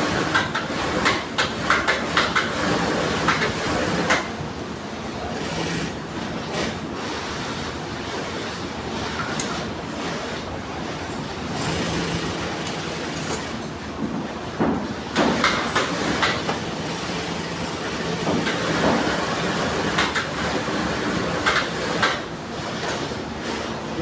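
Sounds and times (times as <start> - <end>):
sewing machine running: 0.0 - 13.6, 15.2 - 24.0
sharp clicks and knocks: 0.3 - 2.6, 3.2 - 4.3, 12.6 - 16.6, 18.2 - 19.1, 19.9 - 20.4, 21.4 - 22.2.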